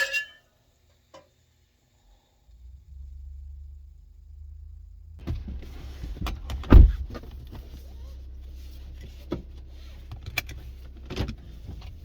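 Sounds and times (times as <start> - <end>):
steady low hum: 2.0 - 12.0
loud thump: 6.2 - 7.2.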